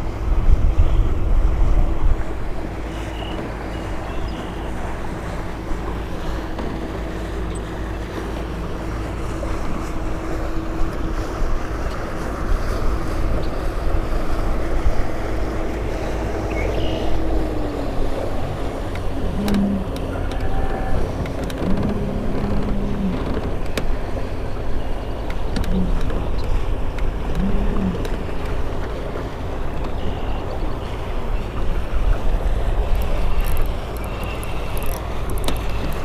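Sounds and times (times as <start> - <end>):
motorboat engine running: 0.0 - 36.0
wind on microphone: 0.0 - 36.0
faint clicks: 32.9 - 36.0.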